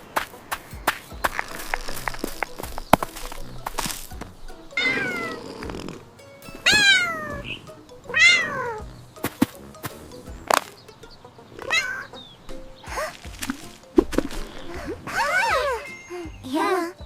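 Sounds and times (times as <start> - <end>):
cartoon cats meowing: 4.8 - 5.4, 6.6 - 8.8.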